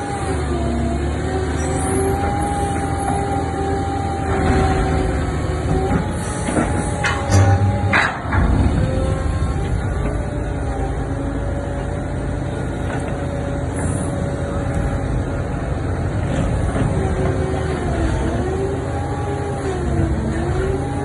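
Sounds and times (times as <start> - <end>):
hydraulic whine: 0.0 - 11.2
diesel engine rumbling: 0.0 - 21.0.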